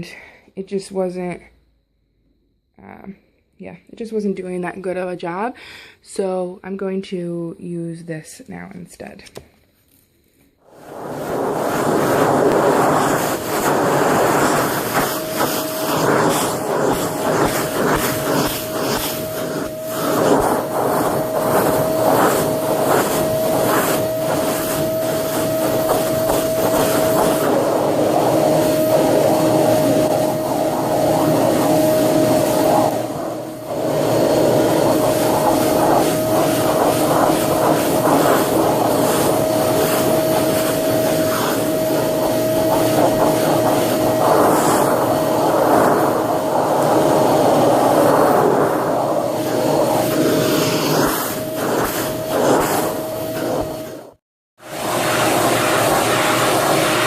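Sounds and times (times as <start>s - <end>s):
vacuum cleaner motor whine: 10.6s - 57.0s
brush strokes on carpet: 10.7s - 54.1s.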